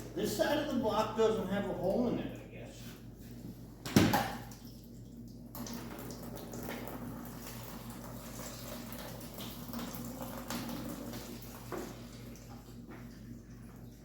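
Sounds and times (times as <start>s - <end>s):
water trickling and dripping: 4.4s - 14.0s.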